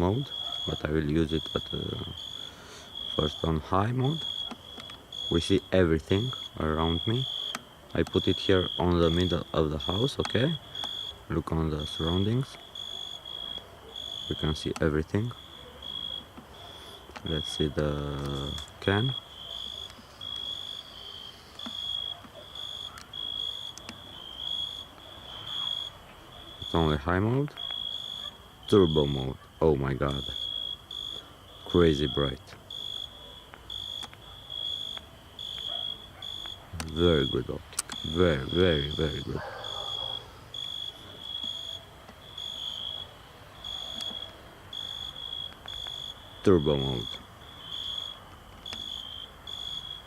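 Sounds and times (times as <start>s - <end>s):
crickets chirping: 0.0s - 50.0s
faint clicks: 21.5s - 24.1s, 33.5s - 37.0s, 37.6s - 38.2s.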